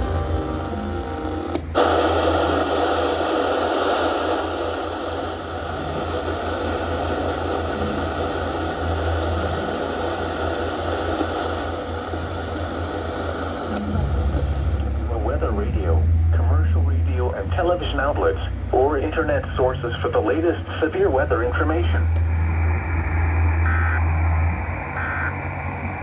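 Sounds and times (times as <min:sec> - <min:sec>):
low hum: 0:00.0 - 0:26.0
radio static hiss: 0:00.0 - 0:26.0
click: 0:13.7 - 0:13.9.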